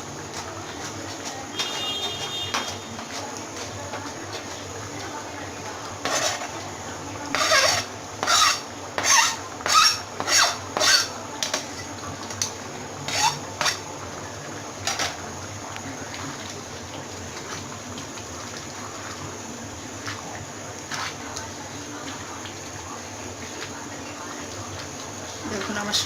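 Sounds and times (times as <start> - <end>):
utensil scraping a cooking pot: 0.1 - 15.4.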